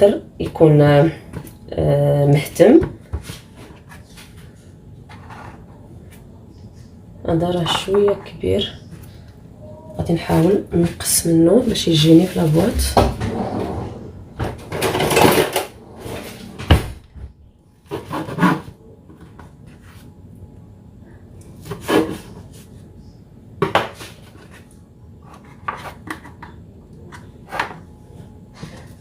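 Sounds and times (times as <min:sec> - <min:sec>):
utensils clattering: 0:12.0 - 0:16.7
knife scraping cutting board: 0:17.8 - 0:18.7.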